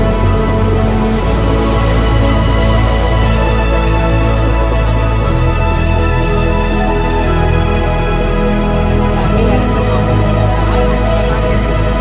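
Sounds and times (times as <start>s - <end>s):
continuous bass line: 0.0s - 12.0s
sustained chords: 0.0s - 12.0s.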